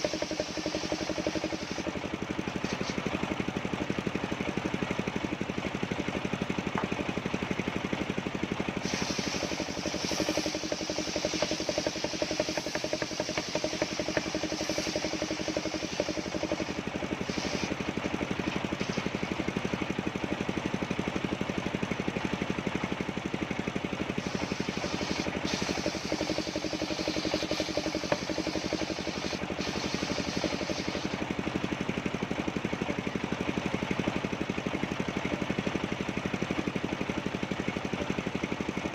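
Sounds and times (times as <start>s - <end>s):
saw blade cutting wood hiss: 0.0s - 3.1s, 8.8s - 19.4s, 24.1s - 31.3s
sawmill engine running: 0.0s - 38.9s.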